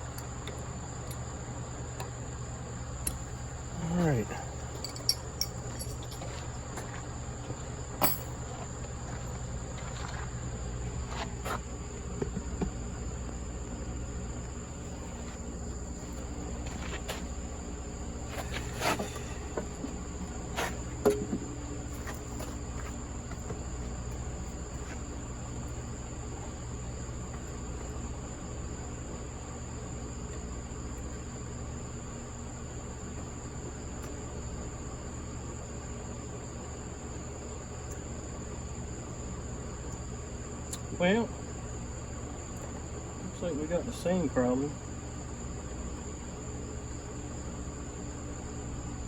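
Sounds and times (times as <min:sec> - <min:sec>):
sharp clinks and knocks: 0:04.7 - 0:06.4, 0:08.0 - 0:08.4.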